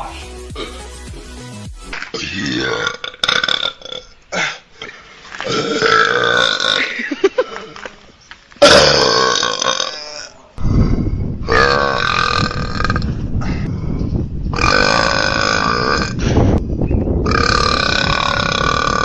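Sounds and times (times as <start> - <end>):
men belching: 0.5 - 0.9, 2.1 - 4.6, 5.4 - 7.8, 8.6 - 13.2, 14.5 - 16.4, 17.2 - 19.0.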